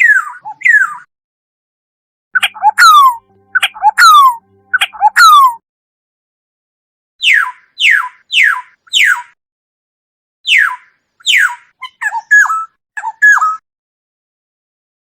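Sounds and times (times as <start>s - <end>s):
oriole calling: 2.4s - 5.6s.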